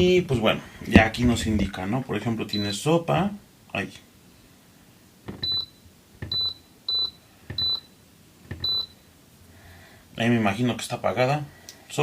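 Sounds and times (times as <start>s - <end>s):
short high beeps: 8.6s - 9.0s.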